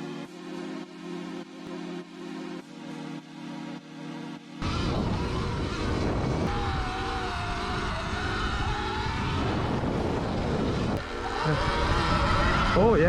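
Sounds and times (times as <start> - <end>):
faint wavering whine: 0.0 - 13.0
steady low rumble: 4.6 - 13.0
wind rushing over microphone: 4.6 - 13.0.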